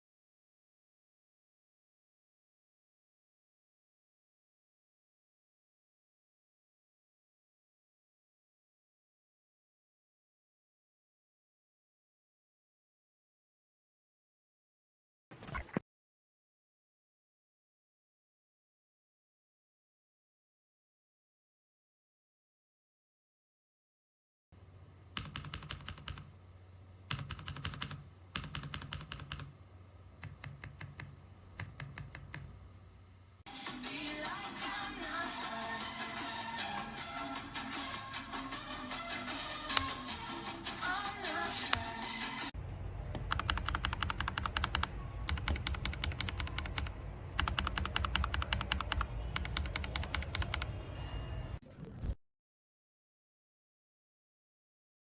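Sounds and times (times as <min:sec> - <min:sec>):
mechanical keyboard typing: 0:25.2 - 0:26.3, 0:27.1 - 0:29.5, 0:30.2 - 0:32.5, 0:43.2 - 0:50.7.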